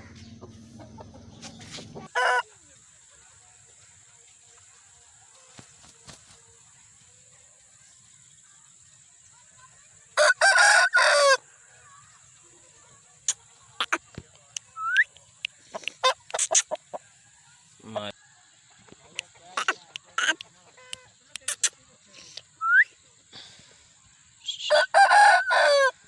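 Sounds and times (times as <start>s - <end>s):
rooster crowing: 2.0s - 2.4s, 10.2s - 11.4s, 24.6s - 26.0s
short sharp calls and clicks: 13.3s - 16.9s, 19.1s - 21.8s.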